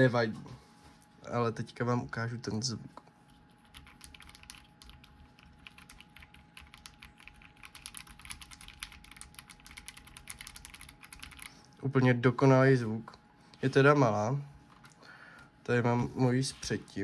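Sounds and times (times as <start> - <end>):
mechanical keyboard typing: 3.6 - 11.5.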